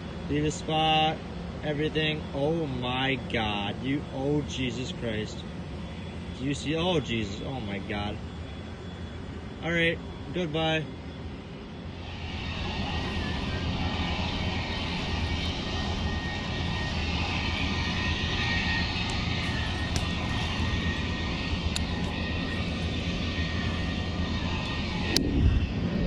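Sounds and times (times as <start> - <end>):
low rumble: 12.0 - 26.0.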